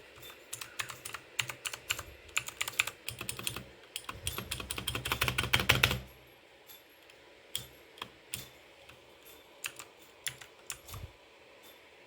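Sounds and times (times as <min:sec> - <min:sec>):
keyboard keys clicking: 0:00.2 - 0:06.1, 0:09.6 - 0:11.1.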